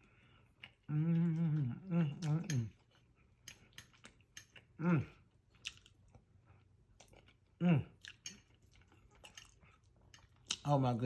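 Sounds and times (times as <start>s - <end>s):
man chewing food: 0.0s - 10.9s
man humming mmm: 0.9s - 2.7s, 4.8s - 5.2s, 7.6s - 8.0s.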